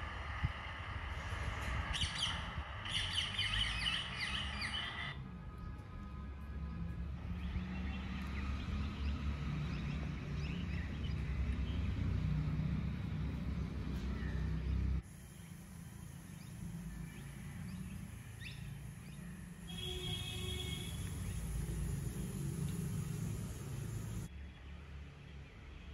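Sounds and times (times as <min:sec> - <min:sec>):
steady low rumble: 0:00.0 - 0:03.0, 0:20.8 - 0:24.3.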